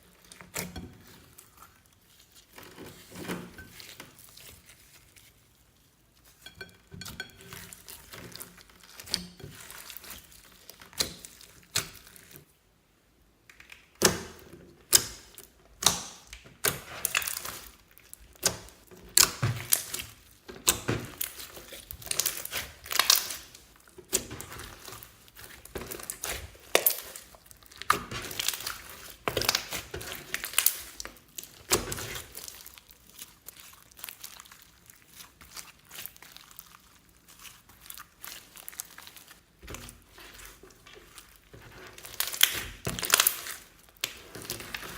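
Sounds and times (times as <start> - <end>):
slime squished by hand: 13.5 - 44.9.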